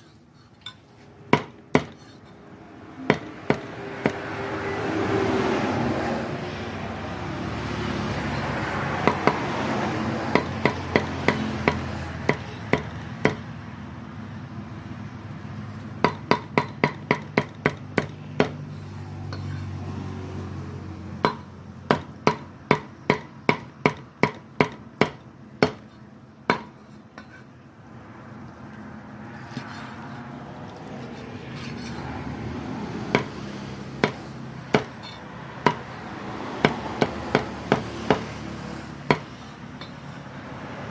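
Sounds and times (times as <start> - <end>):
knife chopping on wooden board: 1.3 - 2.1, 3.1 - 4.2, 10.3 - 13.4, 16.0 - 18.6, 21.2 - 26.9, 33.1 - 33.4, 34.0 - 35.9, 36.6 - 38.3, 39.1 - 39.3.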